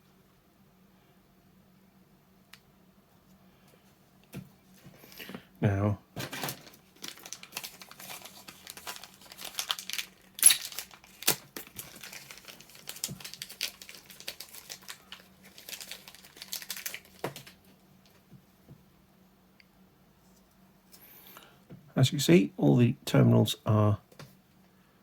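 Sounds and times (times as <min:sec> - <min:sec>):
packaging crackling and rustling: 0:06.2 - 0:18.2.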